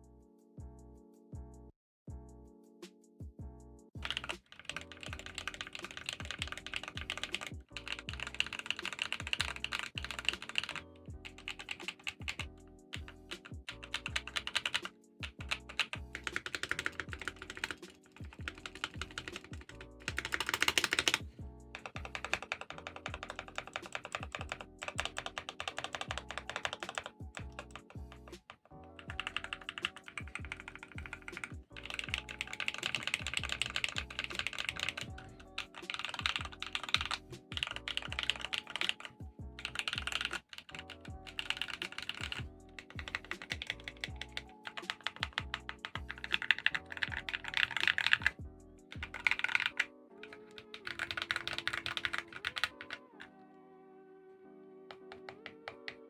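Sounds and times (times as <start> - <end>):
background music: 0.0 - 56.0
mechanical keyboard typing: 4.0 - 53.2, 54.9 - 56.0.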